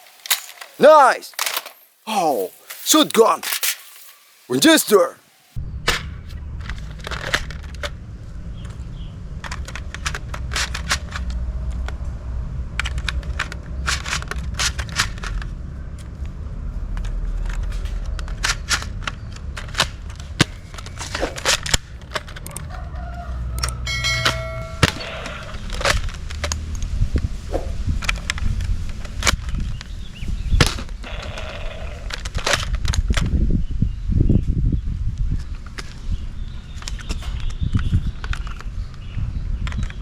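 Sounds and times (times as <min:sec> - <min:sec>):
wind rumbling on microphone: 0:25.9 - 0:40.0.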